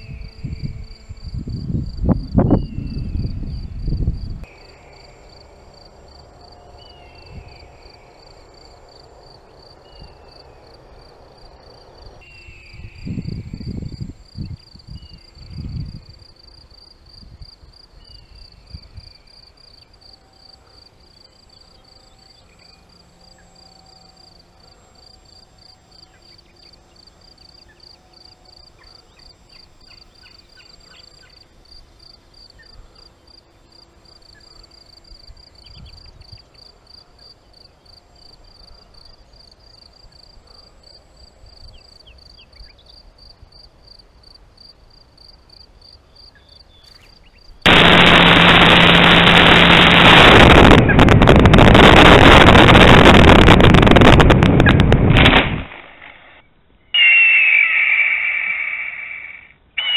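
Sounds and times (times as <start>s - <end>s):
loud low rumble: 47.7s - 55.4s
eagle cry screech: 57.0s - 59.9s
fast pulsing chirp: 57.0s - 59.9s.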